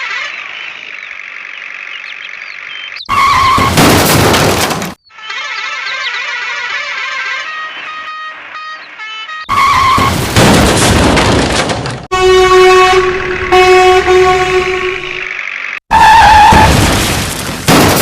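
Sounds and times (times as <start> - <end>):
cartoon vehicle skidding: 0.0 - 1.0, 3.1 - 10.3, 13.4 - 16.9
horn honking: 5.3 - 10.1, 12.1 - 16.6.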